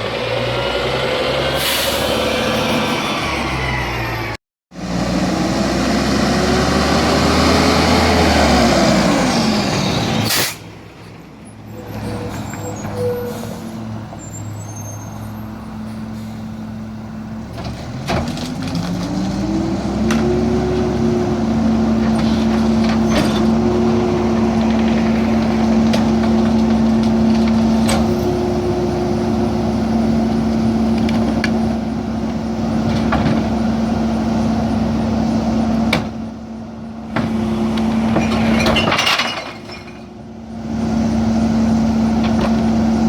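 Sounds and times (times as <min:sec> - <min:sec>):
diesel truck engine revving: 0:00.0 - 0:10.9, 0:16.8 - 0:38.6.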